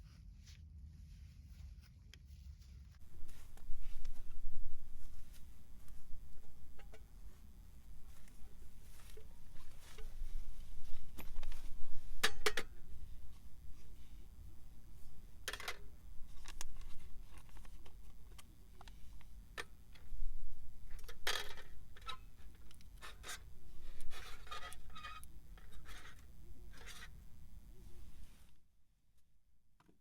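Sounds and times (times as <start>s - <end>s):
small objects being handled: 2.2s - 27.2s
low steady rumble: 3.0s - 22.8s.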